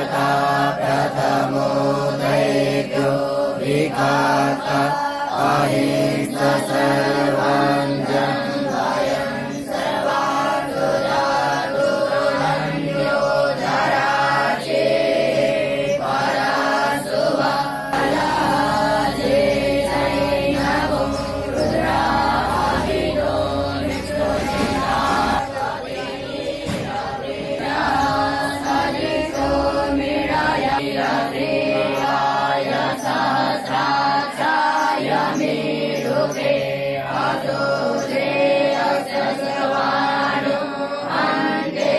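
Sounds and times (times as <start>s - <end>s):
group chanting in unison: 0.0s - 41.9s.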